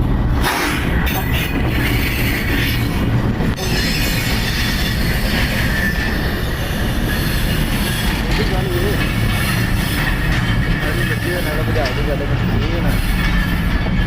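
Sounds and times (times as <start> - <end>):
train wheels rumbling on rails: 0.0 - 14.0
high wheel squeal: 3.6 - 14.0.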